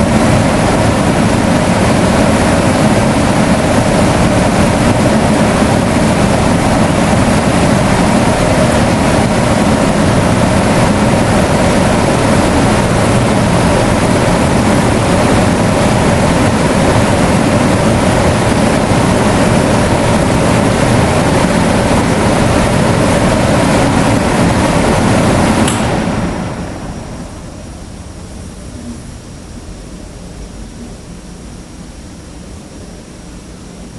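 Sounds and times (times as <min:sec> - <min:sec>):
electric fan running: 0:00.0 - 0:33.9
fan switch click: 0:25.6 - 0:26.2.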